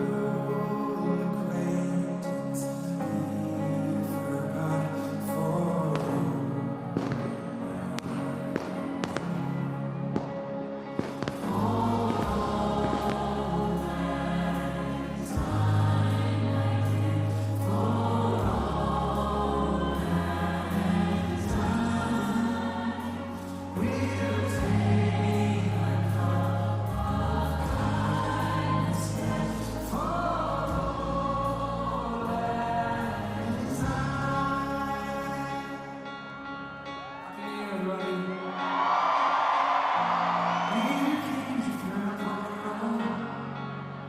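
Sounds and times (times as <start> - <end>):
choir singing: 0.0 - 44.0
long held bass notes: 5.6 - 35.8.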